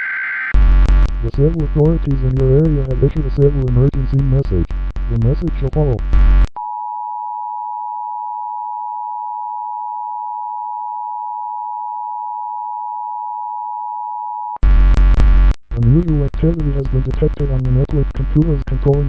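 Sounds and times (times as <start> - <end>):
harsh noise burst: 0.0 - 6.5, 14.6 - 19.0.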